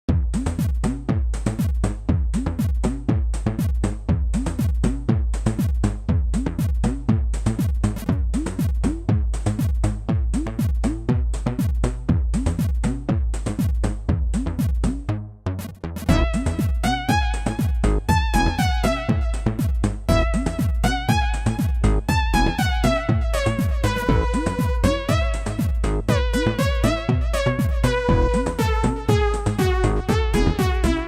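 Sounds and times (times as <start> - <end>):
drum machine beat with heavy bass: 0.1 - 31.0
synth melody: 16.0 - 31.0.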